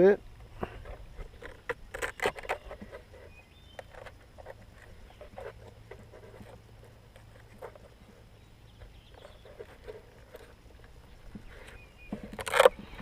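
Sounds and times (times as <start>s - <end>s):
light clicks and rustles: 0.4s - 13.0s.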